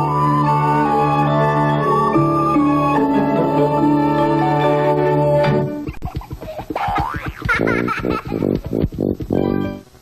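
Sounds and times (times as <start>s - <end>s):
jingle music melody: 0.0s - 5.8s.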